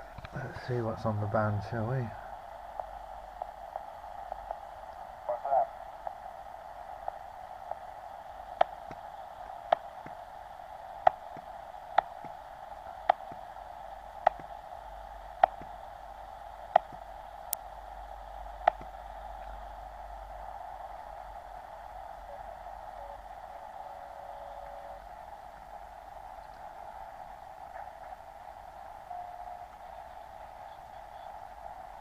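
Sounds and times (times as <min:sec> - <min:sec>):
radio receiver hiss: 0:00.0 - 0:32.0
sharp clicks: 0:15.4 - 0:15.7, 0:16.7 - 0:17.6, 0:18.6 - 0:19.0.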